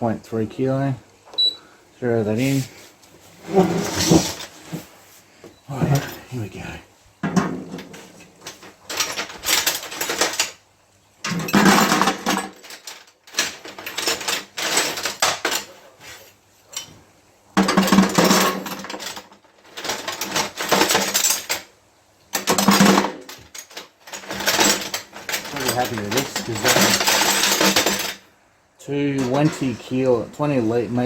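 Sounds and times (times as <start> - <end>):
copper pipes clattering into metal container: 11.2 - 15.7, 17.6 - 21.7, 22.4 - 28.2.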